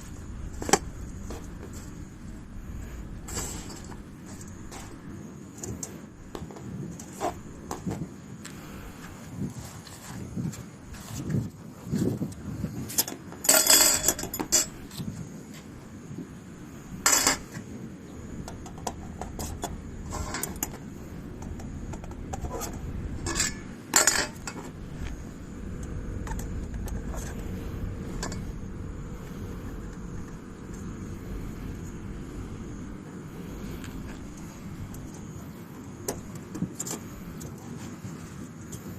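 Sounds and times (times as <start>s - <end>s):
metal camping gear clattering: 0.0s - 8.0s, 12.8s - 15.0s, 17.0s - 17.6s, 18.4s - 29.1s.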